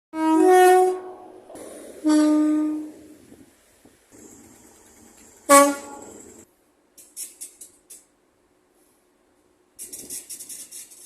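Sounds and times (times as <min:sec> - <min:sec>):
train horn blasts: 0:00.2 - 0:01.4, 0:02.0 - 0:02.9, 0:05.5 - 0:06.3.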